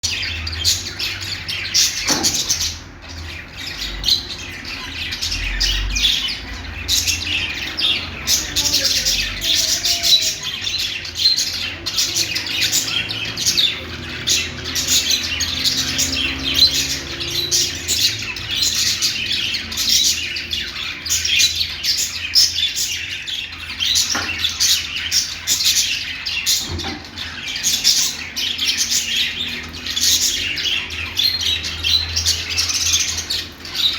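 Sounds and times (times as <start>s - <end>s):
budgerigars chirping: 0.0s - 33.9s.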